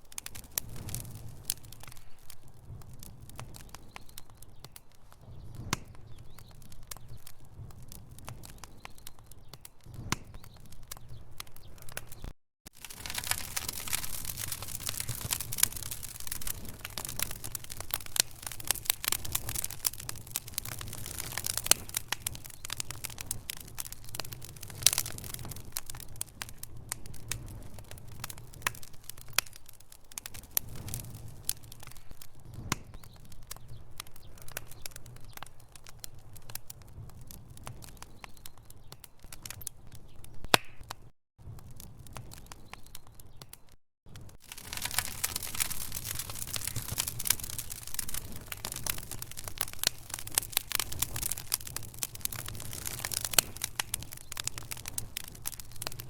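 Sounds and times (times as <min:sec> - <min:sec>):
logs crackling in a fireplace: 0:00.0 - 0:56.0.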